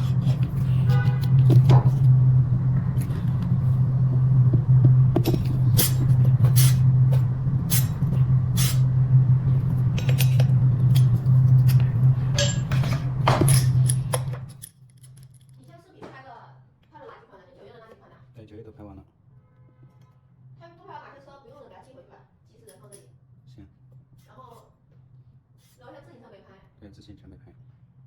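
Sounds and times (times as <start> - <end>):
sharp clicks and scrapes: 0.0 - 2.1, 9.7 - 15.6
low mechanical hum: 0.0 - 28.0.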